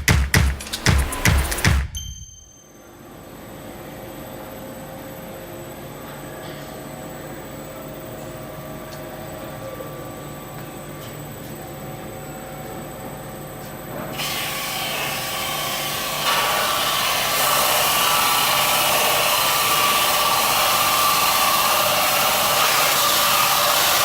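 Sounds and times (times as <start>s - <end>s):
rotating brushes hissing: 0.0s - 1.9s
sanding machine humming: 0.0s - 1.9s, 15.2s - 24.0s.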